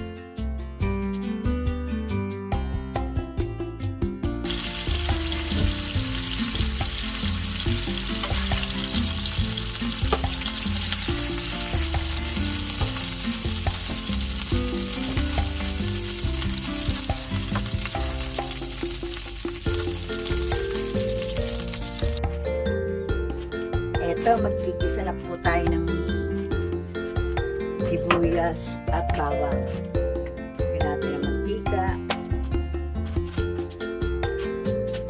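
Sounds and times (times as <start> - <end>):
background guitar music: 0.0 - 35.0
chicken sizzling in hot oil: 4.4 - 22.2.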